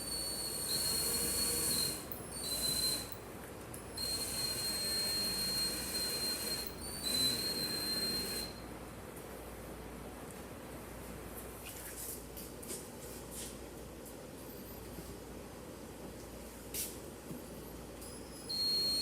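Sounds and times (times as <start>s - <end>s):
electric power tool whining: 0.2s - 3.2s, 4.0s - 8.6s.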